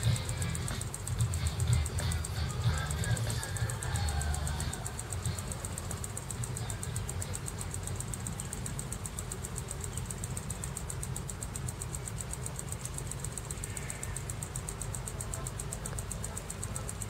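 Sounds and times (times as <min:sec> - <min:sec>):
high-pitched pulsing: 0:00.0 - 0:11.1.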